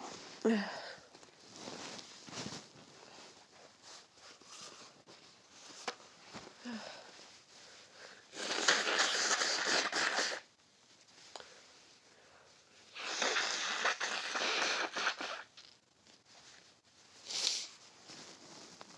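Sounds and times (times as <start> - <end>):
person blowing nose: 8.2 - 10.5, 12.9 - 15.6.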